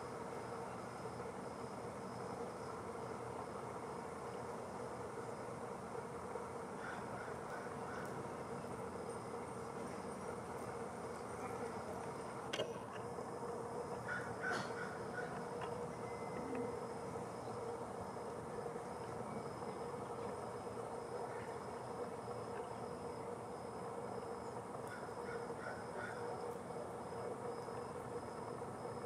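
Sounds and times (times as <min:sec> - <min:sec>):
outdoor background hum: 0:00.0 - 0:29.0
faint bird calls: 0:06.7 - 0:08.7, 0:14.0 - 0:16.8, 0:24.9 - 0:26.4.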